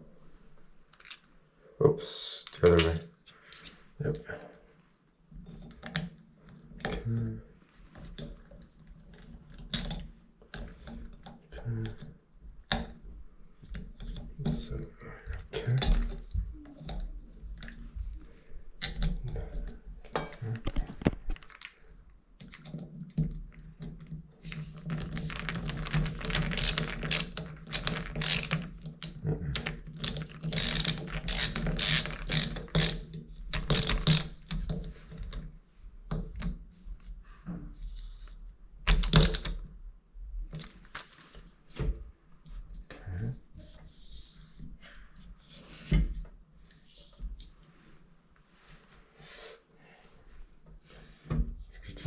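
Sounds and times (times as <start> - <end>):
tools clicking on metal parts: 25.0 - 34.6.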